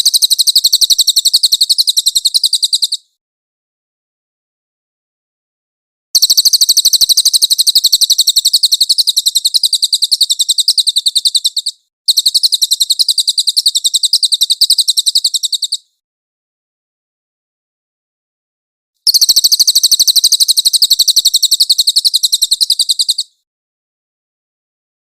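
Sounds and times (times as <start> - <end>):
bird trilling: 0.0 - 3.0, 6.2 - 15.9, 19.1 - 23.3.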